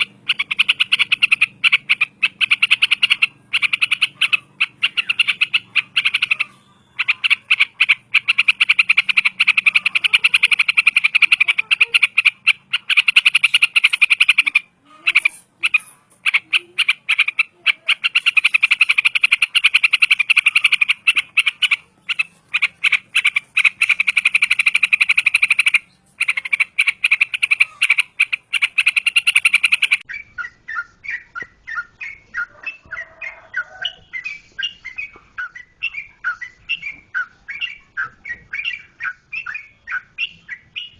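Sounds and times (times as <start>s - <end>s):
bulbul chirping song: 0.0s - 40.9s.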